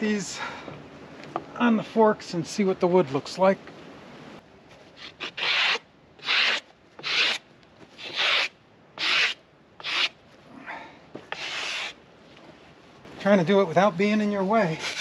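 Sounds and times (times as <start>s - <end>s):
broom sweeping sawdust off wood: 8.0s - 10.1s.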